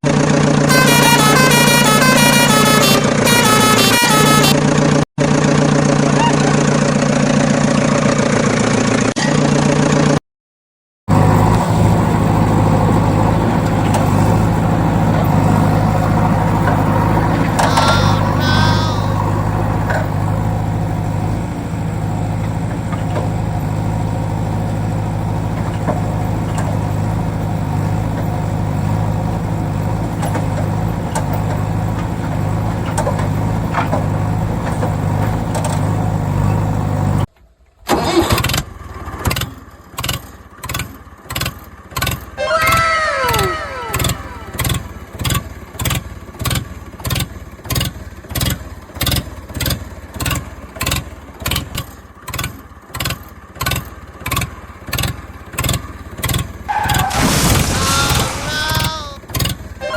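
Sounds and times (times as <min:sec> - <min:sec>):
heavy vehicle engine idling: 0:00.0 - 0:10.2, 0:11.1 - 0:59.9
warbling high tone: 0:17.6 - 0:19.5, 0:42.4 - 0:44.6.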